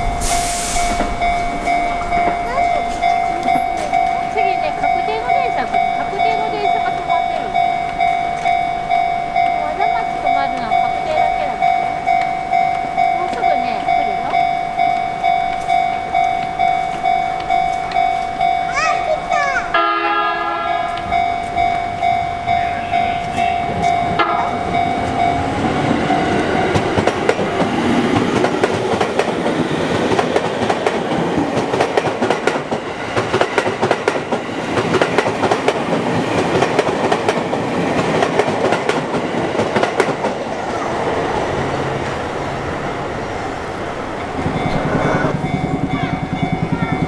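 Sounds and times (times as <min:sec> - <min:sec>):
crossing bell ringing: 0:00.0 - 0:47.0
electric train passing: 0:00.0 - 0:47.0
train wheels clattering over rail joints: 0:23.2 - 0:47.0.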